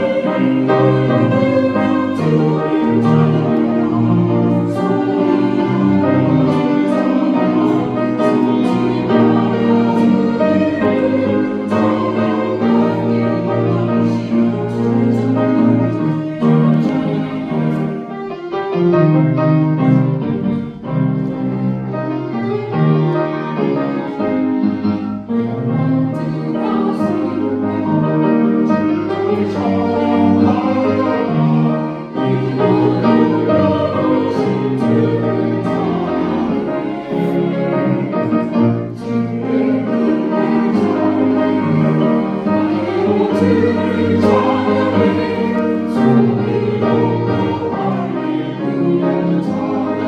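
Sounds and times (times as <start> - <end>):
bowed strings: 0.0 - 18.5
choir singing: 0.0 - 50.0
piano: 0.0 - 50.0.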